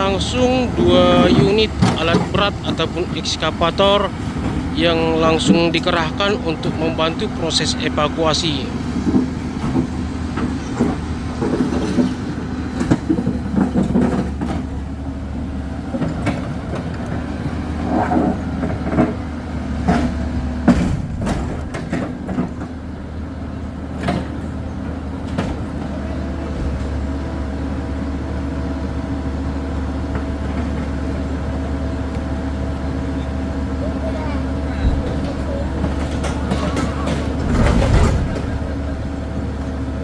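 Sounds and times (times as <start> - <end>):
excavator diesel engines running: 0.0 - 40.0
knocks and clanks: 0.9 - 6.0, 9.0 - 14.9, 15.9 - 17.2, 17.9 - 22.8, 24.0 - 24.6, 25.2 - 27.0, 34.8 - 39.2.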